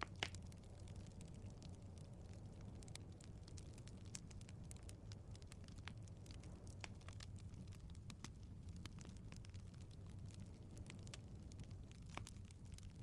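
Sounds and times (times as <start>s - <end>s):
fire crackling and popping: 0.0s - 13.0s
low rumble of flames: 0.0s - 13.0s.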